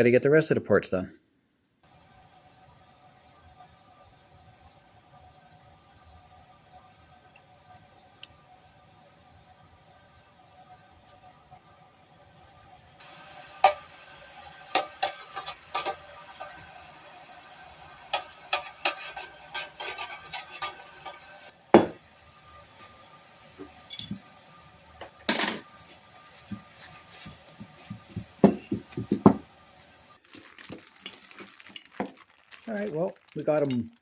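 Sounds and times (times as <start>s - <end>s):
steel parts clinking: 23.8s - 24.2s.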